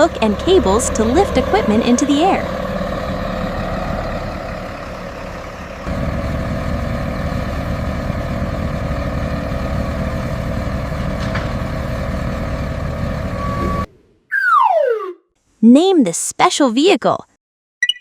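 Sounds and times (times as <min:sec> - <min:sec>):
heavy diesel engine running: 0:00.0 - 0:13.9.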